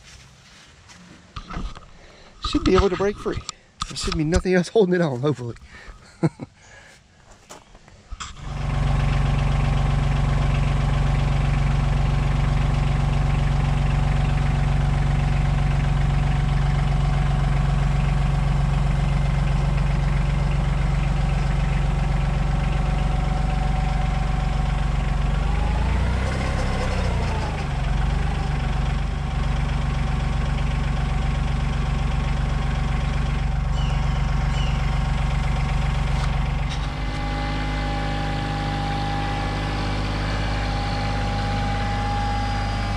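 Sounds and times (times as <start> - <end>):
tractor diesel engine running: 1.4 - 6.1, 7.5 - 42.9.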